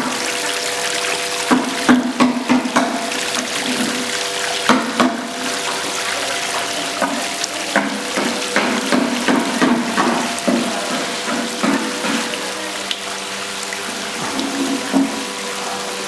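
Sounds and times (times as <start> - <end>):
water pouring over fountain: 0.0 - 16.0.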